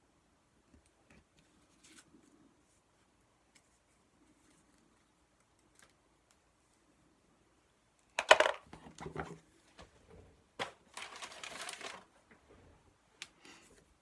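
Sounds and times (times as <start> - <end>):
paper crinkling and rustling: 10.6 - 12.2.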